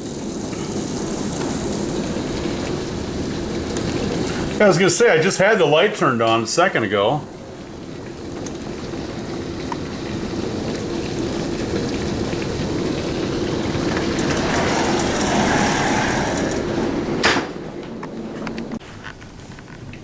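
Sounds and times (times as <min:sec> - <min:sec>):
storm wind and rain: 0:00.0 - 0:20.0.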